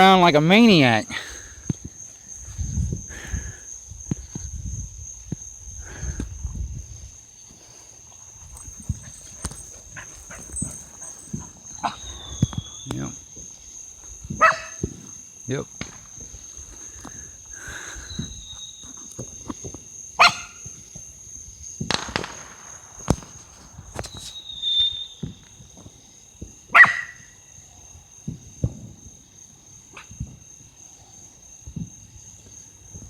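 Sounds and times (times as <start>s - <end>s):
distant fireworks bangs and pops: 8.5s - 26.8s, 28.2s - 29.2s, 30.1s - 30.5s, 31.6s - 33.0s
dog barking: 9.0s - 12.1s, 14.3s - 14.8s, 20.2s - 20.6s, 26.7s - 27.3s.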